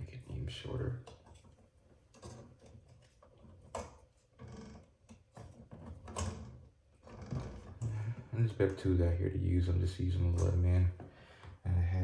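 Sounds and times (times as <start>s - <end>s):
small clicks of hand tools and wire: 1.0s - 6.7s.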